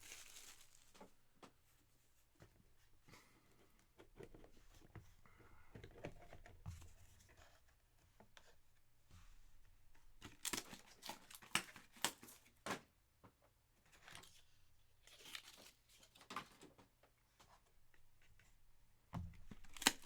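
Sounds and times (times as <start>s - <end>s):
plastic crinkling and tearing: 0.0s - 1.1s, 10.3s - 12.5s, 15.1s - 16.3s, 19.5s - 20.0s
packaging rustling: 0.0s - 1.2s, 19.4s - 20.0s.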